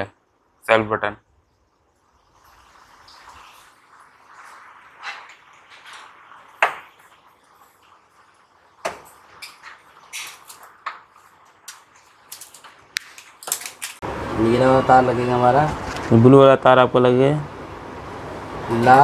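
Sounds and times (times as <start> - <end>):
light rattles: 8.8 - 19.0
clicks and taps of small parts: 11.7 - 14.0.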